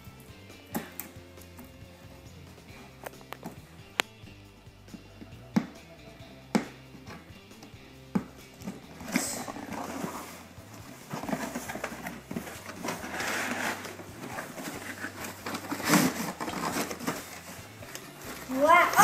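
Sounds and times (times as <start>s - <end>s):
packaging rustling and tearing: 11.0s - 19.0s.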